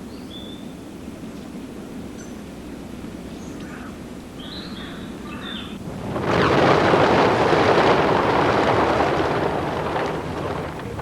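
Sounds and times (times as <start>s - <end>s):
faint bird chirps: 0.0s - 0.8s, 3.3s - 5.8s
loud rushing noise: 5.8s - 11.0s.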